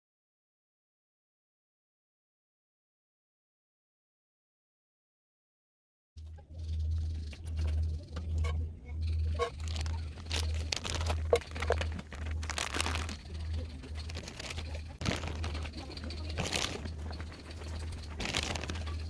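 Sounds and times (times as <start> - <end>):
crinkling and rustling: 6.2 - 19.0
low pulsing beat: 6.2 - 19.0.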